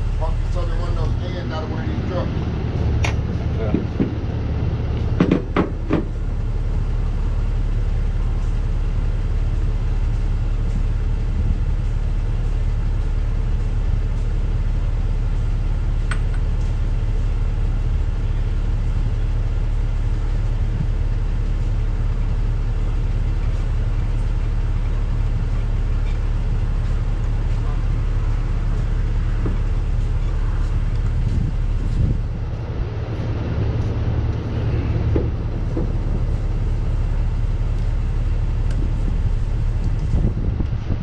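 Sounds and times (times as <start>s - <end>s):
vehicle engine rumble: 0.0s - 41.0s
sharp knocks: 5.2s - 6.2s.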